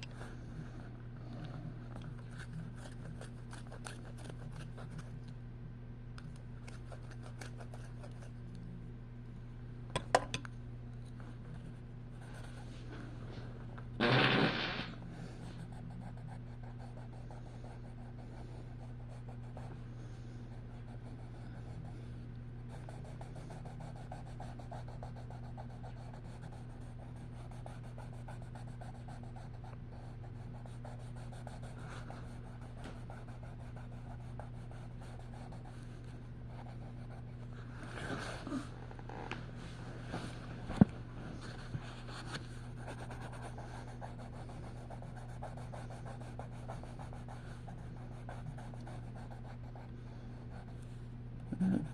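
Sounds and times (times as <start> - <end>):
steady low hum: 0.0 - 51.9
short loud sound: 14.0 - 14.9
pencil scratching on paper: 15.6 - 19.7, 20.7 - 21.8, 22.7 - 35.8, 41.9 - 49.8.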